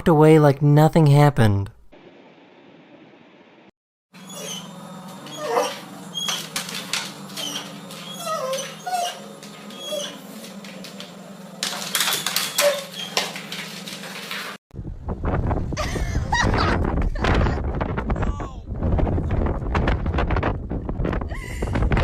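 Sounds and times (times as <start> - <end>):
dog whimpering and yipping: 4.2 - 6.5, 7.4 - 10.3, 12.4 - 13.2
clicking and rustling: 6.3 - 9.8, 10.4 - 14.6.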